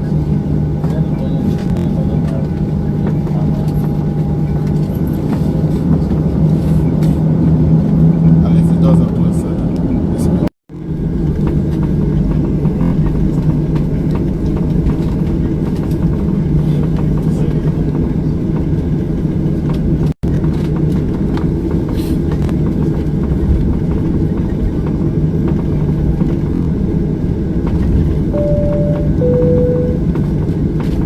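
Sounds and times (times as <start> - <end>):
airliner cabin engine rumble: 0.0 - 31.0
cabin chime tone: 28.4 - 30.0.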